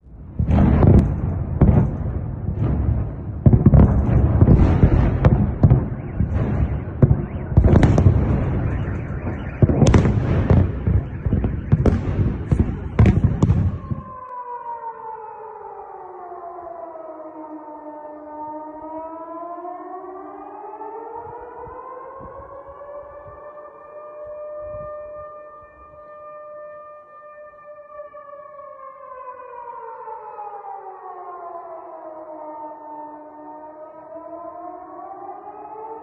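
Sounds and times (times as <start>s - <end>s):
rumble of explosions: 0.0s - 14.2s
air-raid siren wailing: 0.0s - 36.0s
sharp explosion cracks: 0.3s - 14.1s.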